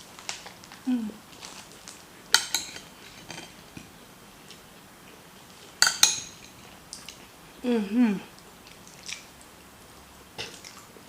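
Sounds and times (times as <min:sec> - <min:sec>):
spoon clinking against dish: 0:02.3 - 0:03.5, 0:05.8 - 0:06.6.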